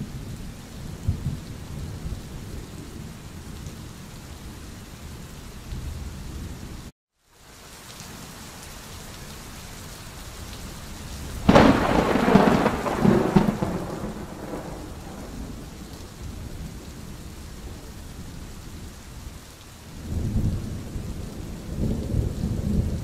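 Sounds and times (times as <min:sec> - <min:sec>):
heavy rain: 0:00.0 - 0:23.0
thunder crack and rumble: 0:00.2 - 0:03.0, 0:11.4 - 0:17.9, 0:20.0 - 0:23.0.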